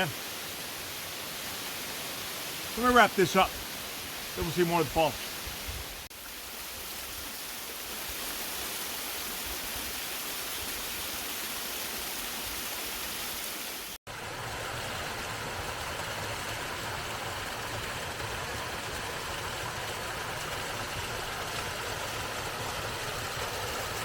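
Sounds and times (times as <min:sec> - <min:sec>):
waterfall rushing: 0:00.0 - 0:05.6.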